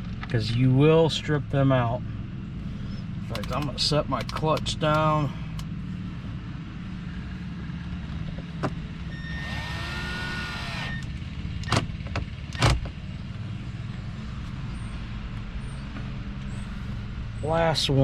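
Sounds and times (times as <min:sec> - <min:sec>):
distant lawn mower engine: 0:02.2 - 0:17.2
sharp clicks: 0:03.3 - 0:05.7.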